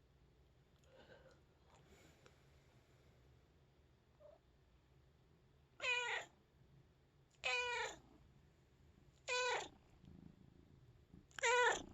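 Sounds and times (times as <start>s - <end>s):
cat meowing: 5.8s - 6.3s, 7.4s - 8.0s, 9.2s - 9.7s, 11.4s - 11.9s.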